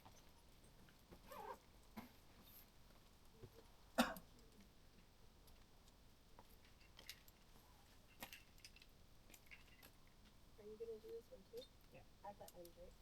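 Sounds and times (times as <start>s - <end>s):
metallic clicks of climbing gear: 5.4s - 10.4s, 11.5s - 12.8s.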